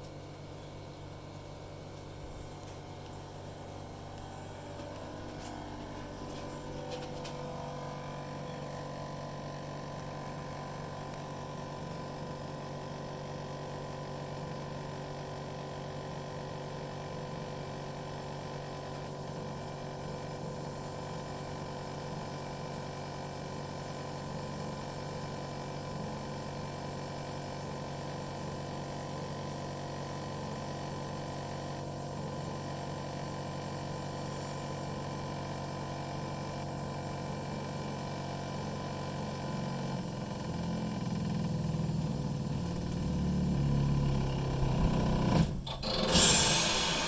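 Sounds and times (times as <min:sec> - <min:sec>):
air conditioner hum: 0:00.0 - 0:16.9
short loud burst of noise: 0:45.3 - 0:47.0.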